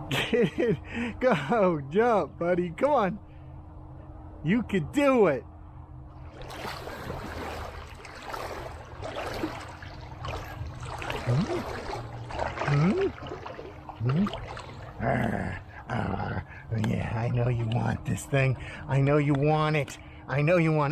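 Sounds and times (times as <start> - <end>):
pool water splashing: 6.1 - 17.9.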